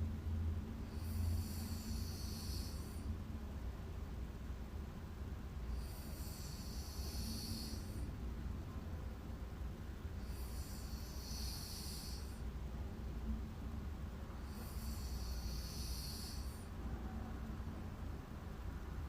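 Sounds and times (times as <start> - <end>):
steady low hum: 0.0 - 19.0
woman snoring lightly: 0.9 - 3.1, 5.7 - 8.1, 10.2 - 12.4, 14.4 - 16.7.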